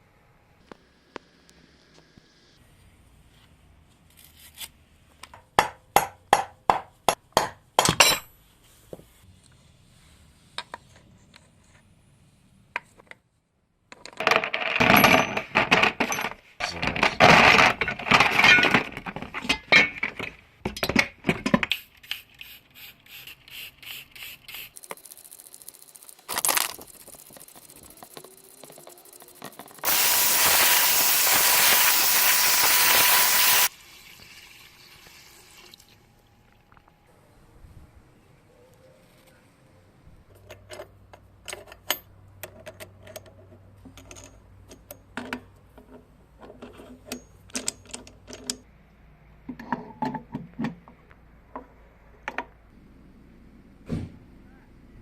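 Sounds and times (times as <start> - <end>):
steady hiss: 29.8 - 35.5.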